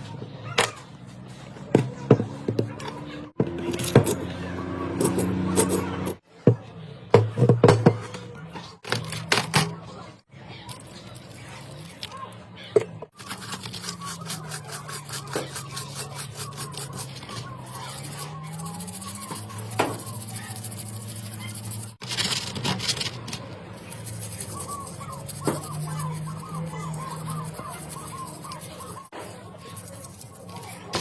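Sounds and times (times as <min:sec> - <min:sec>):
rhythmic rasping strokes: 0:13.1 - 0:22.0, 0:23.7 - 0:31.0.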